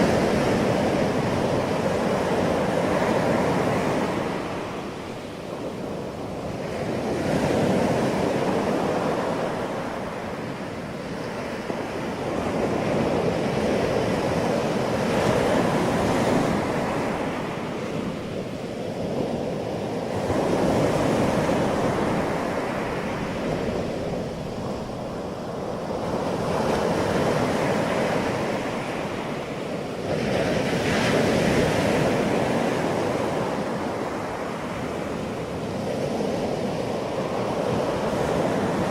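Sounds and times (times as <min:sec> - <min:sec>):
ocean surf breaking on beach: 0:00.0 - 0:38.9.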